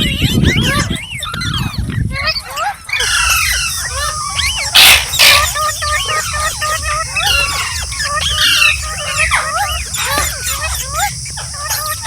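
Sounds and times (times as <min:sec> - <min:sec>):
parrot squawk: 0:00.0 - 0:12.0
parrots chattering: 0:00.0 - 0:12.0
high-pitched hiss: 0:03.0 - 0:12.0.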